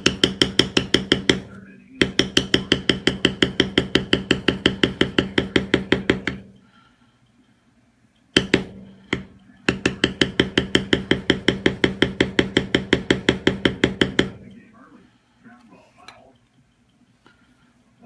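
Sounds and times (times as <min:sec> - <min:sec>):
mallet striking leather stamping tool: 0:00.0 - 0:06.6, 0:08.4 - 0:14.5.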